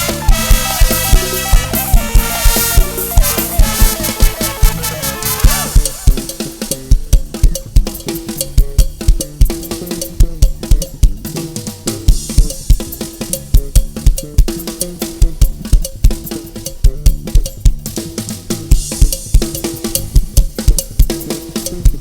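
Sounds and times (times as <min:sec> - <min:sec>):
sustained backing notes: 0:00.0 - 0:06.5
drum kit playing fast beat: 0:00.0 - 0:22.0.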